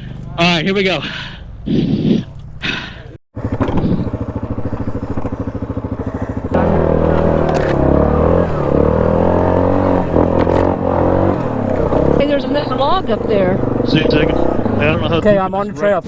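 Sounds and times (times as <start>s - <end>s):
atv engine idling and revving: 0.0s - 16.0s.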